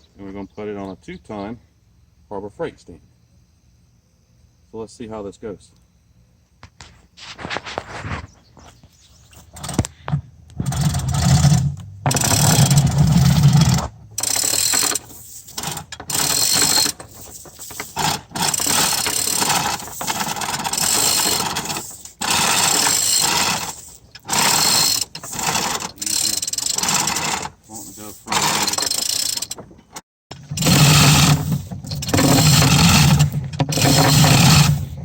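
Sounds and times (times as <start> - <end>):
hoist rattling: 9.3 - 35.0.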